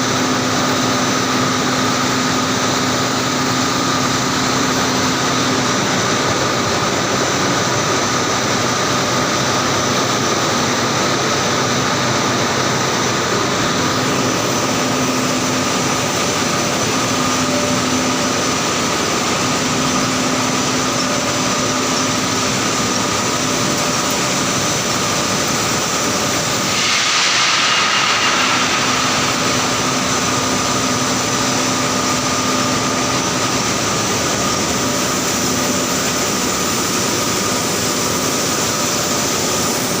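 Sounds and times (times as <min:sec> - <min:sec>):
industrial machinery drone: 0:00.0 - 0:40.0
steady whine: 0:00.0 - 0:40.0
hiss: 0:09.6 - 0:40.0.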